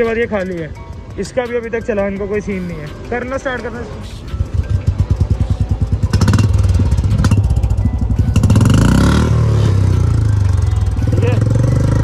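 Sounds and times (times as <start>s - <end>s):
motorcycle engine thumping: 4.2s - 8.9s.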